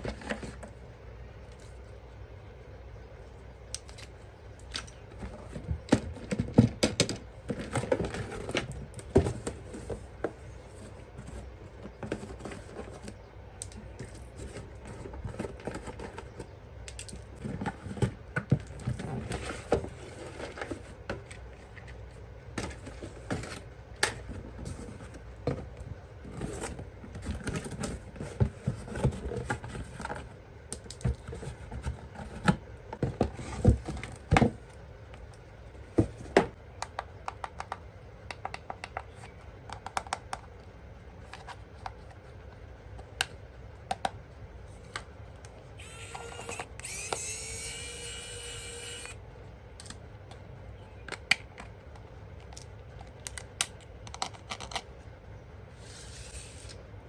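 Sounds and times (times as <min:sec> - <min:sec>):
toys and packaging handled: 0:03.8 - 0:36.6, 0:55.7 - 0:56.9.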